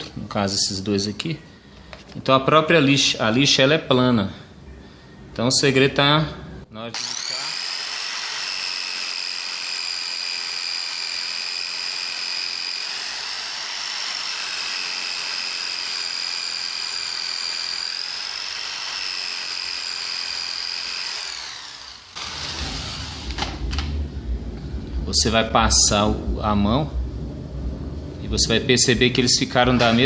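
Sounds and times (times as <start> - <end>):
electric drill sanding rubber: 7.0 - 23.6.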